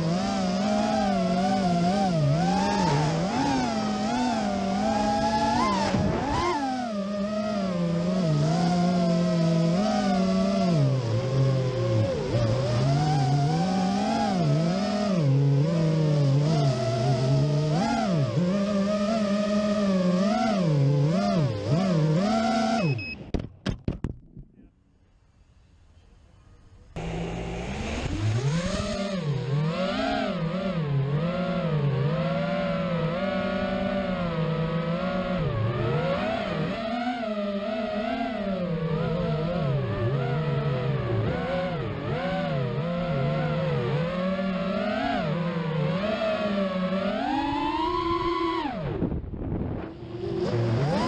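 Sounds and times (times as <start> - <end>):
quadcopter motors whining: 0.0 - 23.2, 26.2 - 51.0
sharp knocks: 23.3 - 24.6.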